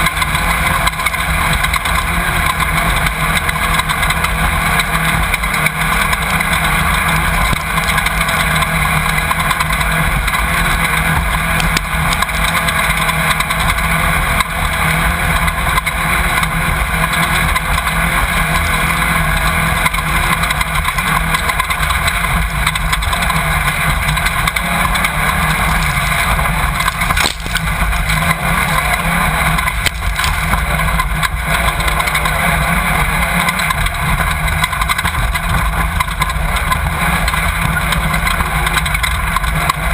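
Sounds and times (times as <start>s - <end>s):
race car engine running hard: 0.0s - 39.9s
road and wind noise: 0.0s - 39.9s.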